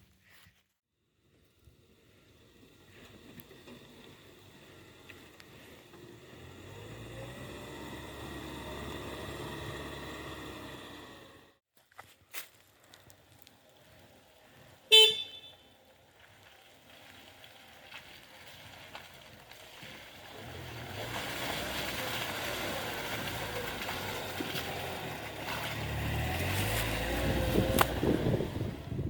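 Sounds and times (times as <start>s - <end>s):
vehicle engine humming: 1.3s - 11.6s, 13.0s - 29.0s
short car beep: 14.9s - 15.5s.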